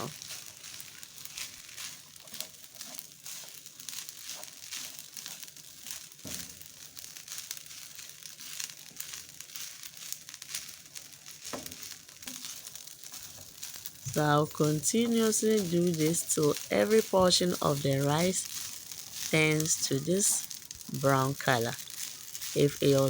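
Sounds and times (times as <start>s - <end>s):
rice frying in oil: 0.0s - 23.0s
spatula scraping pan: 11.7s - 23.0s.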